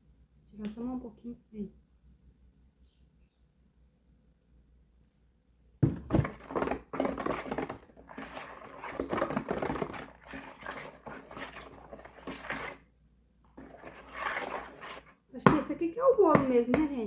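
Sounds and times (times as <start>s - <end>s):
kitchen knocking and clattering: 5.8s - 12.8s.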